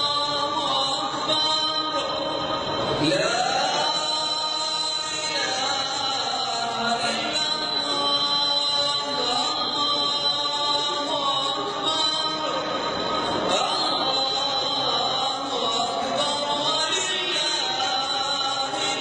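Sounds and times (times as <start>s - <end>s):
unaccompanied vocal chanting: 0.0s - 19.0s.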